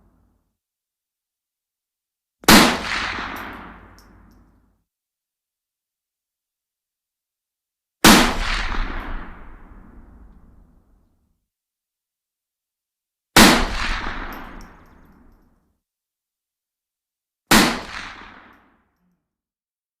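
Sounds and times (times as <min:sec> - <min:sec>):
rifle shots with echo: 0:02.4 - 0:04.2, 0:08.0 - 0:09.9, 0:13.4 - 0:15.1, 0:17.5 - 0:18.6.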